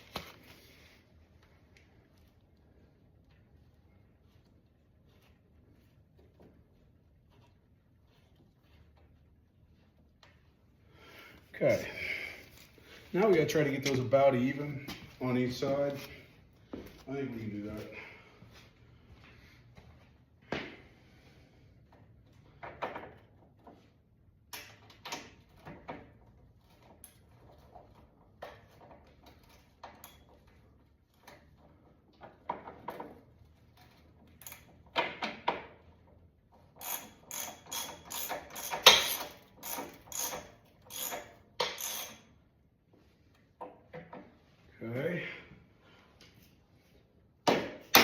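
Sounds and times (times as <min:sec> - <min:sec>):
ratchet clicks: 0:36.7 - 0:42.3
hand tools clicking and tapping: 0:36.8 - 0:42.2.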